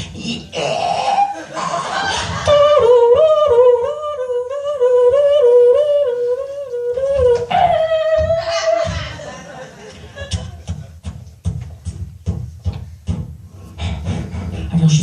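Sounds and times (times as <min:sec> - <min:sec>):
person imitating a siren: 0:00.6 - 0:01.5, 0:02.5 - 0:08.9.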